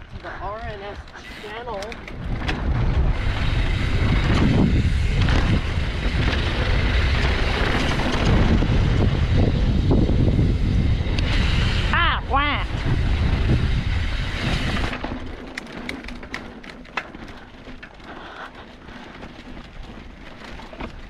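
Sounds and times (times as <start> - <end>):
bike clacking over bumps: 0.0 - 21.0
tyres rumbling on dirt: 0.0 - 21.0
wind buffeting microphone: 0.0 - 21.0.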